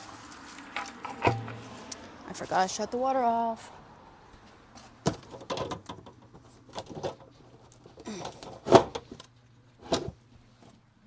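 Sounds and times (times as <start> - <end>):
objects knocking and clattering: 0.8 - 1.8.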